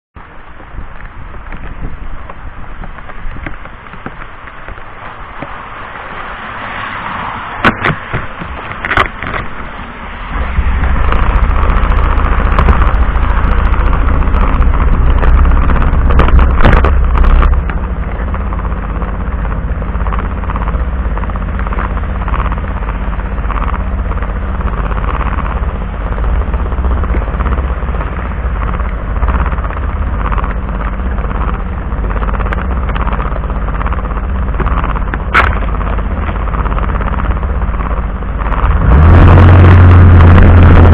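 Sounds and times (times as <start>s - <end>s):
deep rumble: 0.2s - 40.9s
heavy rain on vehicle: 0.2s - 40.9s.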